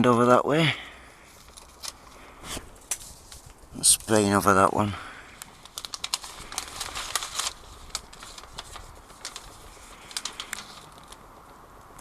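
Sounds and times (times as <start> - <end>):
faint low rumble: 5.0 - 12.0.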